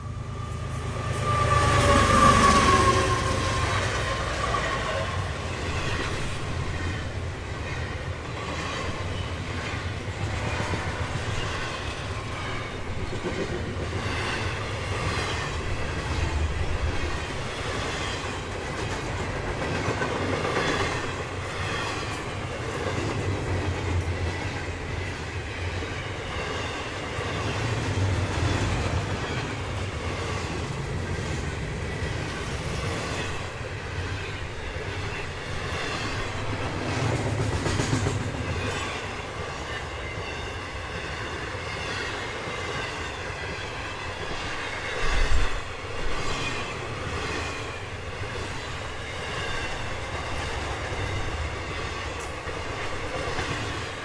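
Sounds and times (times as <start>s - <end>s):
train wheels clicking over rail joints: 5.5s - 39.9s.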